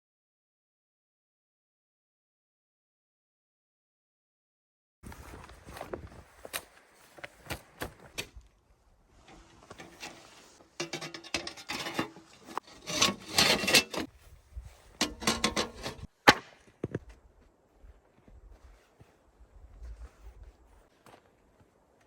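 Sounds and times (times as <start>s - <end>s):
wood rubbing and scraping: 9.2s - 14.1s.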